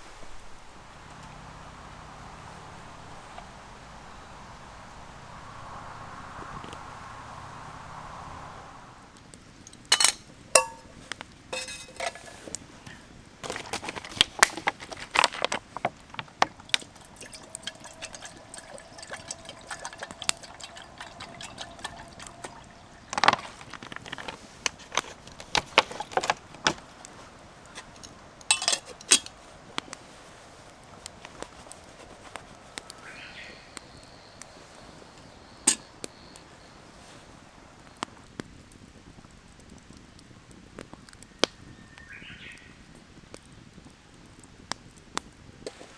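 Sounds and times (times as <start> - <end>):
utensils clinking: 9.7 - 27.0, 27.6 - 29.5, 35.7 - 35.9
liquid being poured: 14.4 - 26.8.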